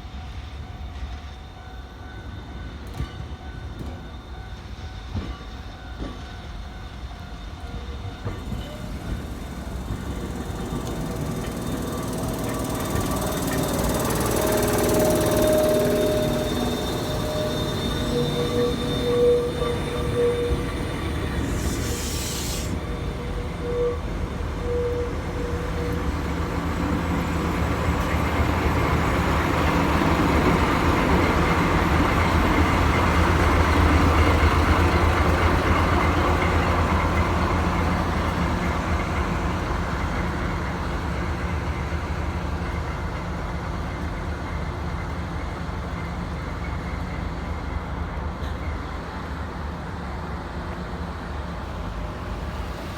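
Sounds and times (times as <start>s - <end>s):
diesel locomotive engine drone: 0.0s - 52.9s
brief wheel squeals: 6.8s - 47.7s
wheel and rail noise: 7.5s - 52.9s
short air hiss: 21.6s - 22.8s.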